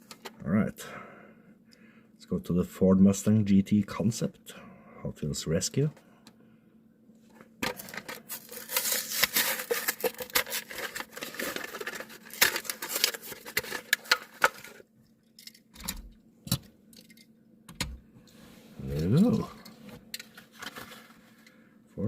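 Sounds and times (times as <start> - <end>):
plastic and card crackling and tearing: 7.7 - 14.8.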